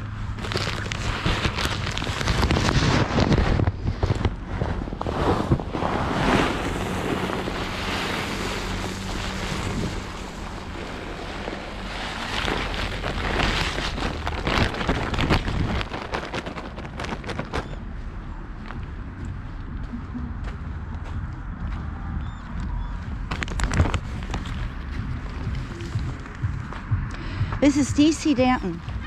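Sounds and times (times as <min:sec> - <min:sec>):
wind buffeting microphone: 0:01.2 - 0:29.0.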